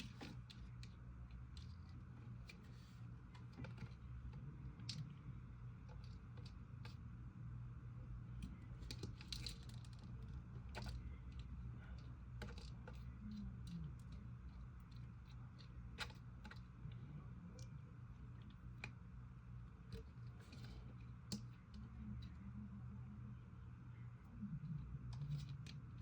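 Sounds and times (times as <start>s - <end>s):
steady low hum: 0.0s - 26.0s.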